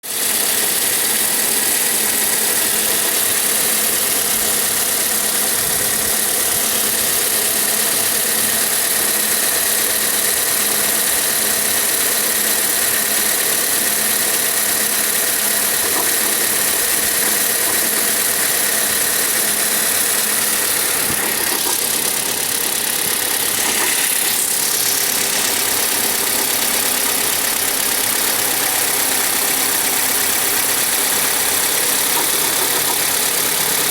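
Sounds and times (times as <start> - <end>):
power steering pump noise: 0.1 - 33.9
car engine idling: 10.6 - 33.9.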